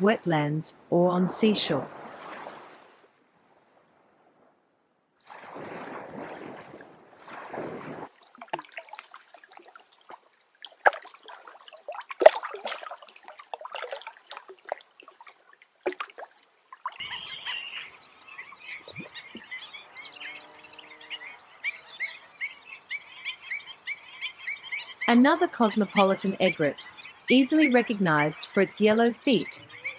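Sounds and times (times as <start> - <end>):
water splashing and dripping: 5.2 - 19.6
rapid chirping calls: 17.0 - 29.9.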